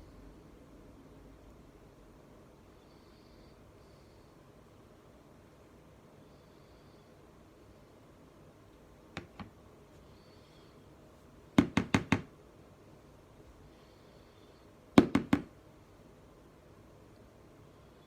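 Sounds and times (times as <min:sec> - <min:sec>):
knocks on hard surface: 0:11.6 - 0:12.3, 0:15.0 - 0:15.5.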